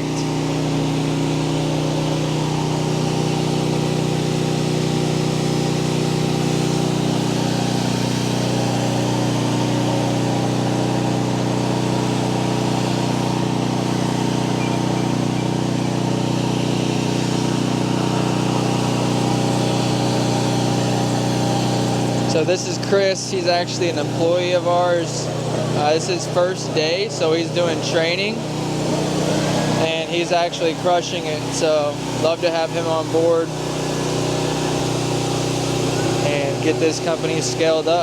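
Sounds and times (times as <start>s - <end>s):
pressure washer engine running: 0.0s - 38.0s.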